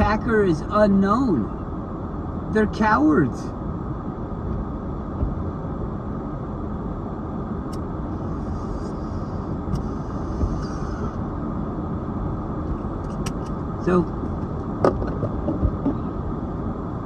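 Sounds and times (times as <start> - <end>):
road and engine noise inside car: 0.0 - 17.0.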